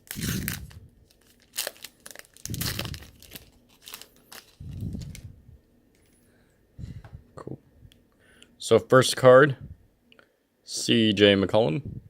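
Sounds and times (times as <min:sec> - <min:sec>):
wrapper tearing and crinkling: 0:00.0 - 0:05.3.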